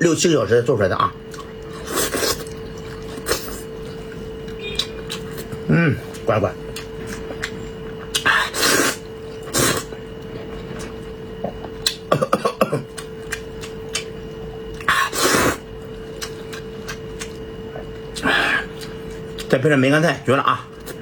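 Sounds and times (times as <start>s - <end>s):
faint steady hum: 0.0s - 21.0s
man slurping food: 8.2s - 9.9s, 14.9s - 15.6s.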